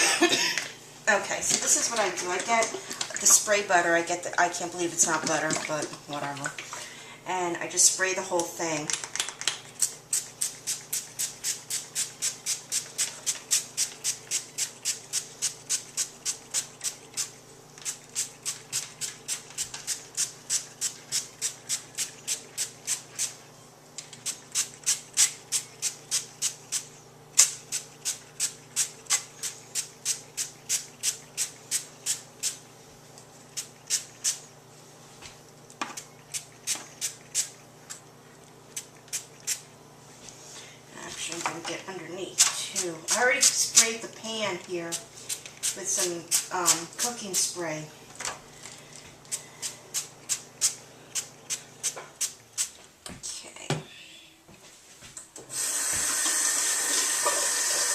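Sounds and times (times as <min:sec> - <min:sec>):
spray bottle hissing squirts: 0:09.8 - 0:23.4, 0:24.2 - 0:32.6, 0:33.5 - 0:34.5.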